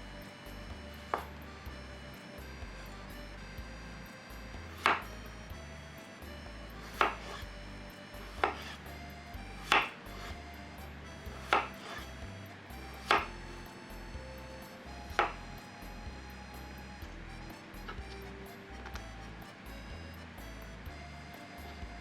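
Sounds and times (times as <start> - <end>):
knife chopping on cutting board: 4.8 - 5.0, 6.9 - 7.4, 8.4 - 8.8, 9.6 - 10.0, 11.4 - 12.0, 13.0 - 13.3.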